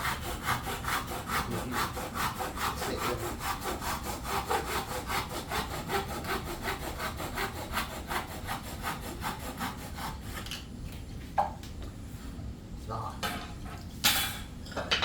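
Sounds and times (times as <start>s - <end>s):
hand saw cutting wood: 0.0s - 10.5s.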